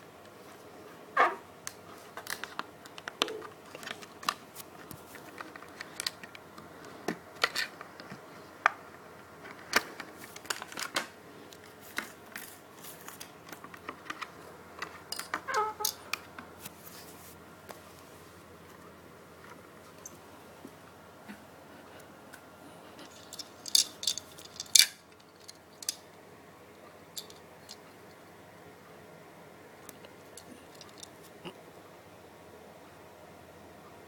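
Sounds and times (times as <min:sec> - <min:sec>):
hands opening plastic packaging: 0:09.4 - 0:16.2.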